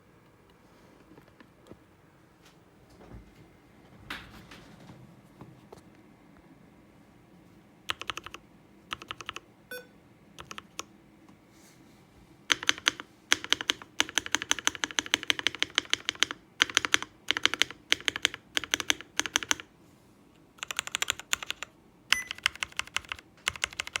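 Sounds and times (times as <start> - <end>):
mechanical keyboard typing: 7.9 - 9.4, 10.4 - 10.9, 12.5 - 19.7, 20.6 - 24.0.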